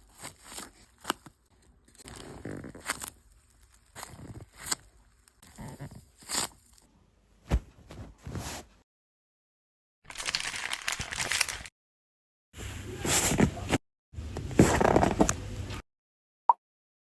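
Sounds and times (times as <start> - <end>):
craft materials crinkling and tearing: 0.0 - 6.9, 10.1 - 11.7.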